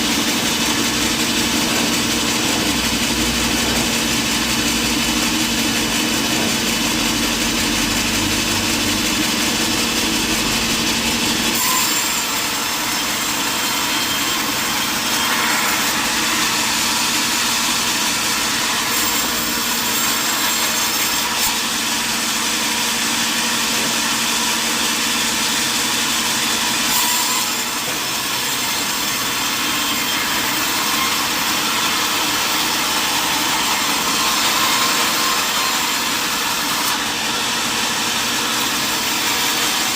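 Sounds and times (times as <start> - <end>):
motor humming: 0.0 - 20.3
saw cutting through wood: 0.0 - 39.9.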